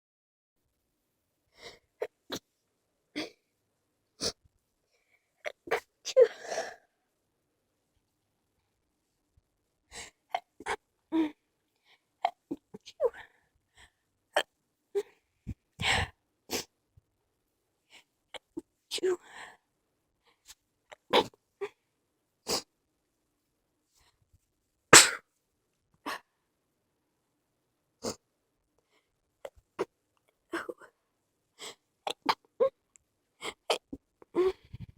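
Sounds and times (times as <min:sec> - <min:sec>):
person stifled sneezes: 0:21.0 - 0:21.4, 0:22.5 - 0:22.7, 0:25.0 - 0:25.2
person stifling sneezes: 0:25.0 - 0:25.2.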